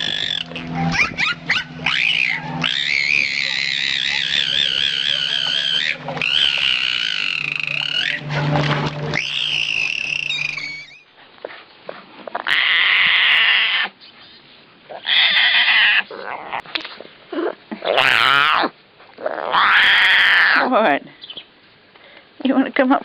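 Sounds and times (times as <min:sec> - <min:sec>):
animal crying: 0:00.0 - 0:08.3, 0:09.1 - 0:11.1, 0:12.4 - 0:14.0, 0:15.0 - 0:16.6, 0:17.8 - 0:18.7, 0:19.4 - 0:20.7.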